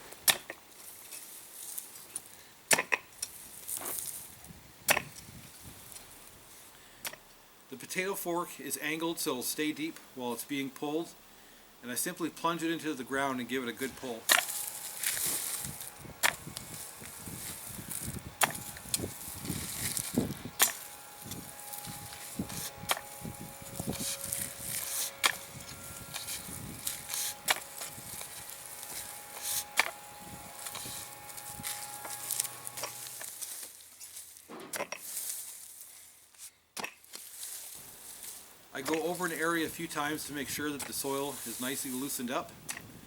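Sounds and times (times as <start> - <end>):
soil scraping rustles: 0.0 - 2.4, 3.1 - 6.7, 12.4 - 42.6
metal tines striking soil: 0.0 - 6.3, 13.2 - 43.0
garden fork tines knocking into soil: 14.3 - 30.0, 34.4 - 35.4.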